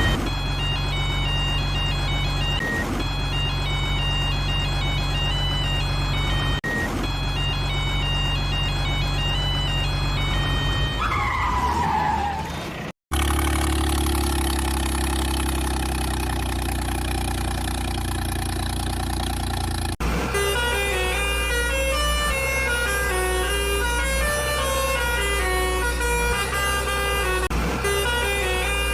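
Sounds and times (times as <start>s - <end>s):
beeping electronic melody: 0.0s - 11.4s, 17.2s - 28.9s
truck engine drone: 0.0s - 28.9s.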